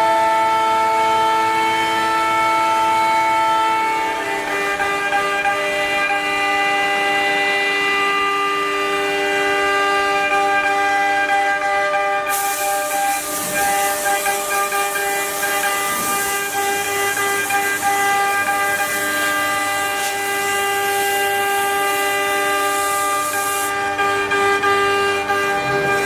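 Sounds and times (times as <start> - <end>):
loud hiss: 12.3 - 23.7
router spindle whine: 13.7 - 26.0.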